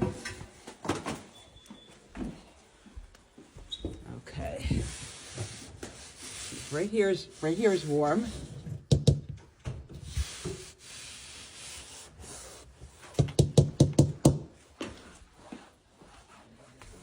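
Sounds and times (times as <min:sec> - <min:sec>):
knocking on a wall: 0:08.9 - 0:09.4, 0:13.2 - 0:14.5.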